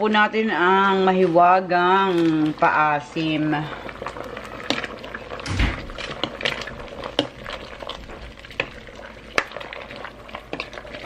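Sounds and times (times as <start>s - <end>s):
broth boiling in a pot: 0.0s - 11.0s
spoon stirring and clicking on pot: 4.1s - 5.2s, 5.8s - 11.0s
dull thump: 5.5s - 6.2s.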